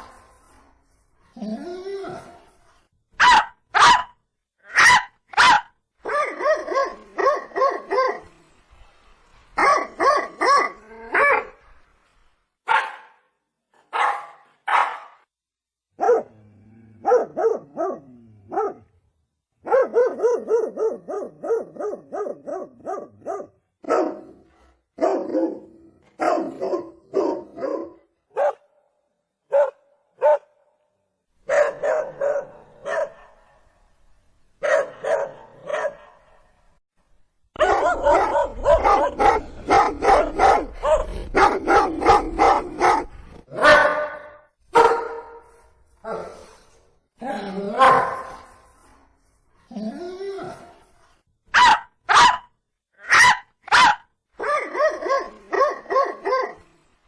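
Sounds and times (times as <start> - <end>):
dogs barking: 3.2 - 4.1, 13.9 - 15.2, 16.0 - 16.3, 19.6 - 24.3, 31.5 - 33.4, 34.6 - 36.2, 37.6 - 45.4, 47.8 - 48.4, 51.5 - 52.5, 53.1 - 56.6.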